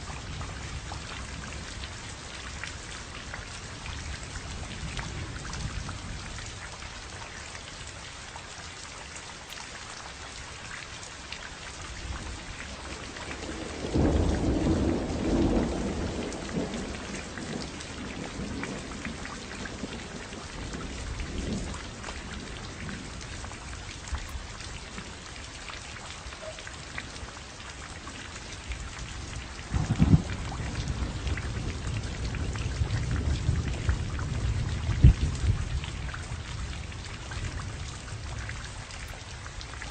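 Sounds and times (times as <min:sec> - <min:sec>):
steady rain falling: 0:00.0 - 0:39.9
thunder rumbling: 0:12.1 - 0:25.2, 0:28.7 - 0:39.7.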